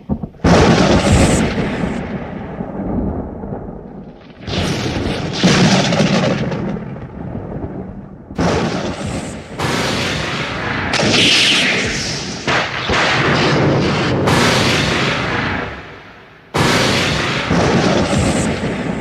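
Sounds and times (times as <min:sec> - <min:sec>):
thunderclaps rumbling: 0:00.0 - 0:19.0.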